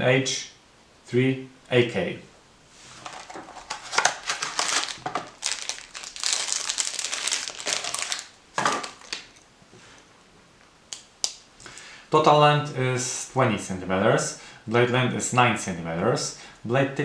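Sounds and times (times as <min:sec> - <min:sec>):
wrapping crinkling: 0:02.8 - 0:09.4.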